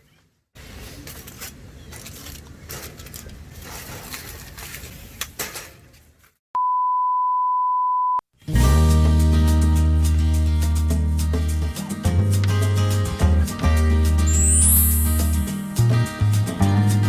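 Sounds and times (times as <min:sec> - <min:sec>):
music: 0:08.5 - 0:17.0
electronic beep tone: 0:14.3 - 0:15.6.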